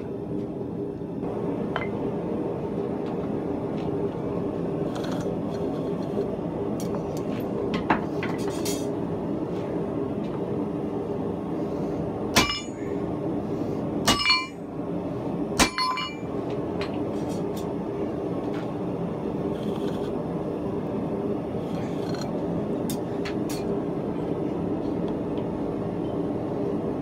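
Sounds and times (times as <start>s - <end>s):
steel striking steel: 12.4s - 12.8s, 14.1s - 14.6s, 15.6s - 16.3s.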